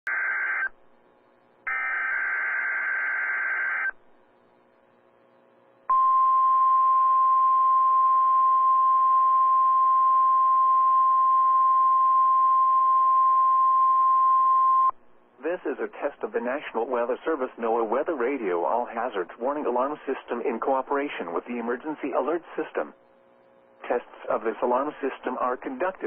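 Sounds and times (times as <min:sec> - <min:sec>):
harsh buzzing digital warble: 0:01.7 - 0:03.9
steady high alarm tone: 0:01.7 - 0:03.9.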